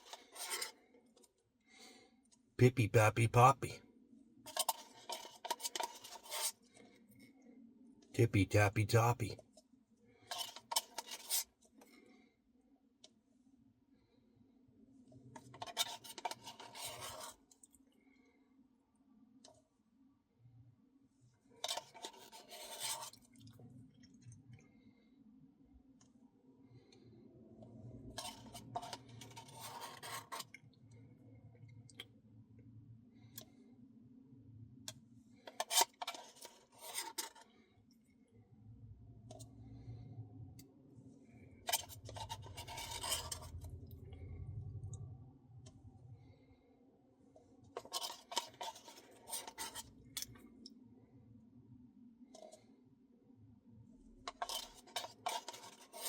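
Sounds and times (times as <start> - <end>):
spoon scraping a cup: 0.0 - 0.7, 4.5 - 6.6, 15.6 - 17.4, 21.6 - 23.2, 28.2 - 30.5, 35.5 - 37.4, 41.7 - 43.6, 47.8 - 49.9, 54.3 - 56.0
faint steady hum: 37.6 - 48.4.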